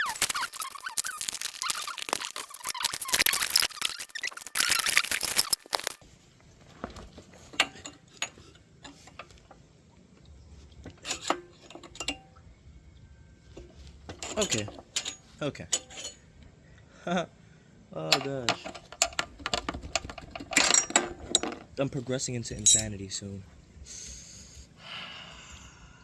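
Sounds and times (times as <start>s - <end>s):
metal parts and tools rattling: 0.0s - 6.0s, 6.9s - 9.5s, 10.9s - 12.3s, 13.5s - 16.3s, 18.1s - 21.8s, 22.5s - 23.2s.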